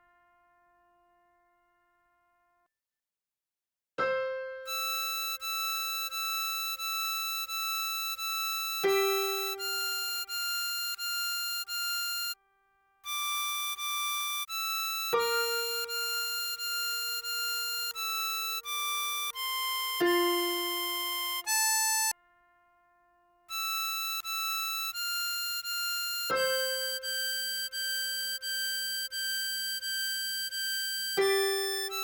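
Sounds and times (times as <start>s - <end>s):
harmonica melody: 4.7s - 12.4s, 13.0s - 22.2s, 23.5s - 32.0s.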